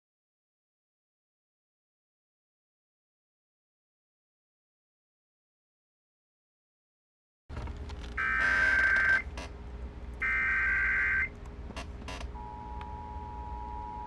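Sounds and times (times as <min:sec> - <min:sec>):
low steady hum: 0:07.5 - 0:14.0
two-tone attention signal: 0:12.4 - 0:14.0.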